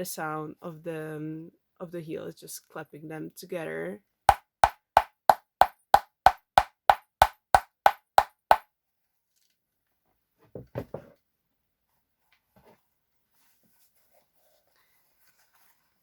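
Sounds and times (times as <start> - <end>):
wooden heels clacking together: 4.3 - 8.6.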